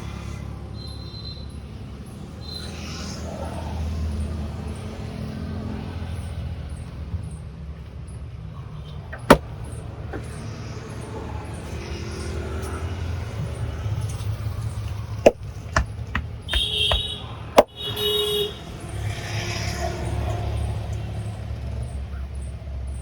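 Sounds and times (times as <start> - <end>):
street traffic rumbling: 0.0 - 23.0
vehicle horn honking: 16.5 - 18.6.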